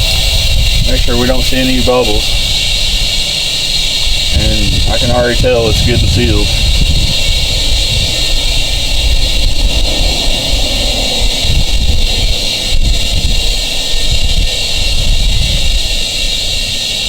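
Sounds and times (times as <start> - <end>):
low rumble: 0.0 - 16.5
compressed air hissing through hose: 0.0 - 17.0.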